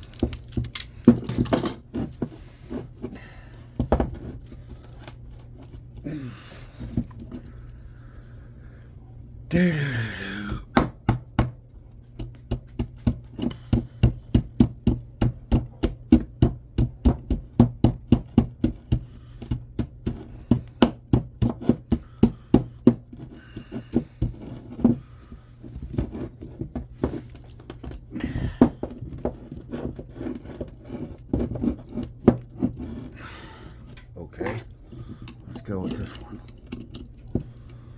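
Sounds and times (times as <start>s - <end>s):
hand tools knocking on motor: 12.2s - 25.0s.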